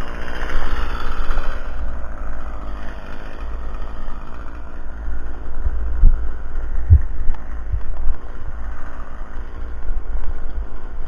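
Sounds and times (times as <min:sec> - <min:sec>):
wind buffeting microphone: 0:05.4 - 0:11.0.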